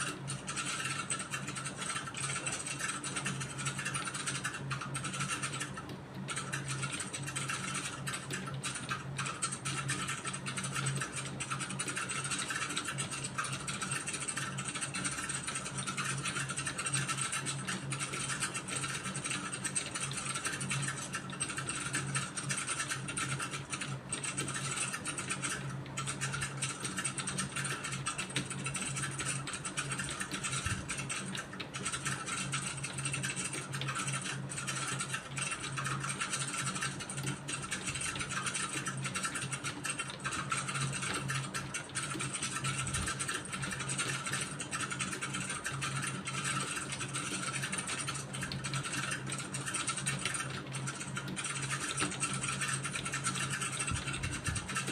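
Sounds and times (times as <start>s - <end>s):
keyboard typing: 0.0s - 54.9s
steady low hum: 0.0s - 54.9s.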